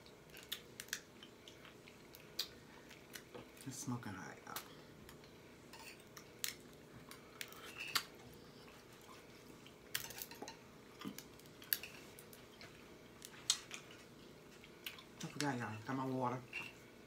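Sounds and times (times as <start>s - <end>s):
eating clicks and smacks: 0.0s - 3.4s, 11.0s - 14.0s.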